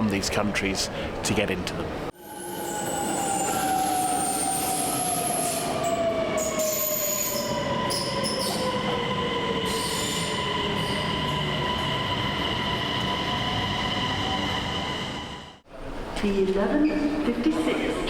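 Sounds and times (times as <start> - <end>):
wheels and brakes squealing: 2.4 - 9.0, 9.6 - 12.0.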